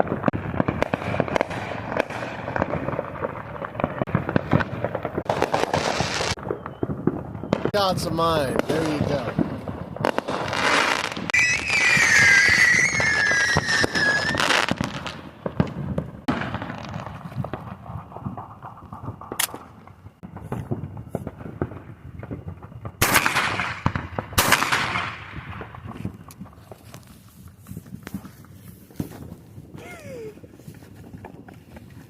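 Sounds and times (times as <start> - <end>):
crackling pops: 0.0 - 32.0
firework bangs: 0.0 - 32.0
firework whistle: 5.4 - 7.8, 10.3 - 15.2.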